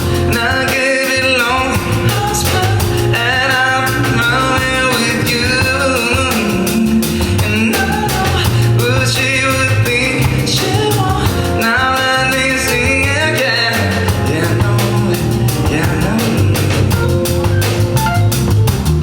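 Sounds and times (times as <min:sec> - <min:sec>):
person singing: 0:00.0 - 0:17.8
live pop band playing: 0:00.0 - 0:19.0.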